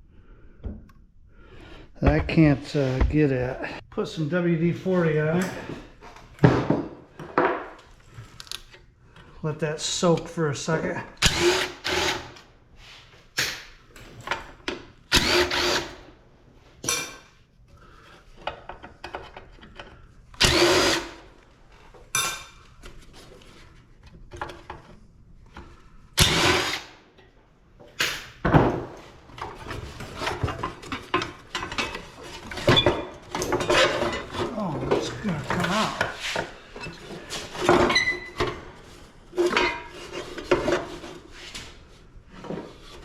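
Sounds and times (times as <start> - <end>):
power drill bursts: 11.2 - 12.4, 15.1 - 16.0, 20.4 - 21.2, 26.2 - 27.0.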